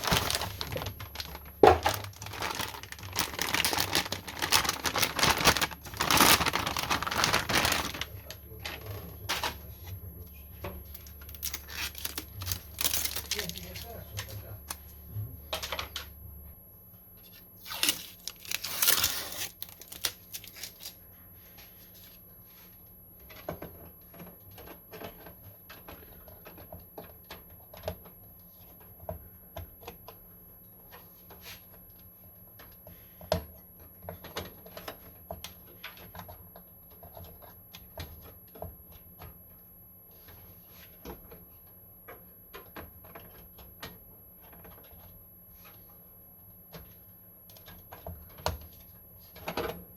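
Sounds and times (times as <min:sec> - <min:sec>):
loud tearing rustle: 0:00.0 - 0:08.1, 0:11.3 - 0:13.6, 0:17.6 - 0:21.0.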